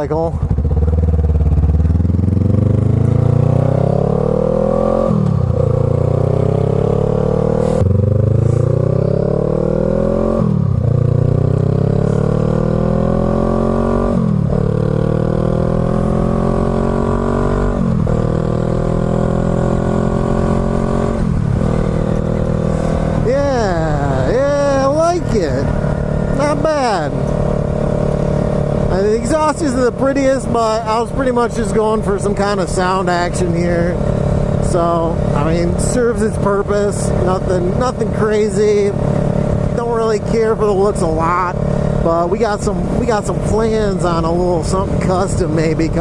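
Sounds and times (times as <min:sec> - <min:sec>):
motorcycle engine accelerating: 0:00.0 - 0:46.0.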